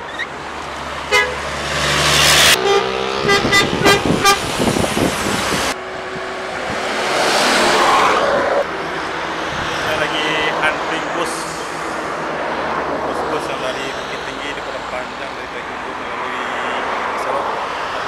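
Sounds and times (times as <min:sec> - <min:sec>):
bus engine and tyre noise: 0:00.0 - 0:18.0
musical bus horn notes: 0:01.1 - 0:01.5, 0:02.5 - 0:04.5
short horn toot: 0:02.6 - 0:04.4.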